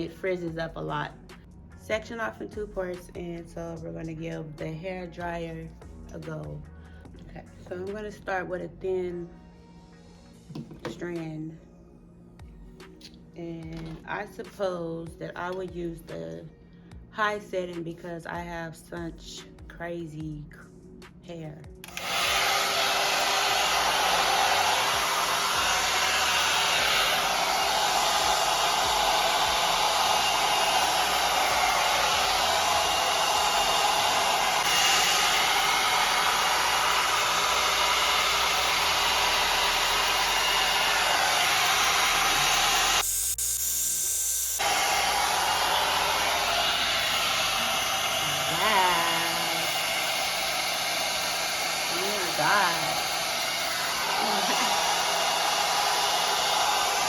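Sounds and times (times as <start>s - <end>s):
hot air brush blowing: 21.8s - 57.0s.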